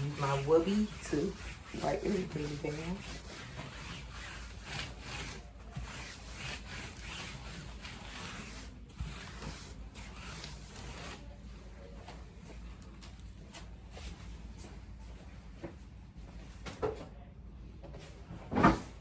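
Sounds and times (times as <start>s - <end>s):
cloth wiping work surface: 0.0s - 11.9s.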